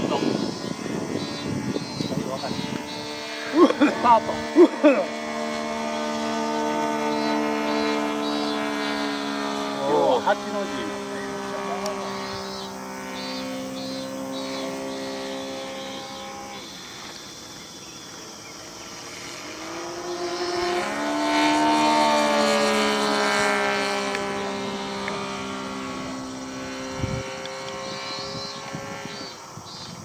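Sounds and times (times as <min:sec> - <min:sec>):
model airplane motor droning: 0:00.0 - 0:30.0.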